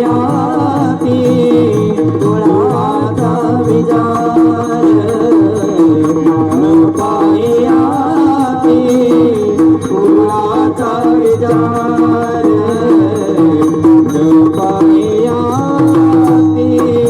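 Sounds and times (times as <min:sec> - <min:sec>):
person singing devotional song: 0:00.0 - 0:17.0
rhythmic drum accompaniment: 0:00.0 - 0:17.0.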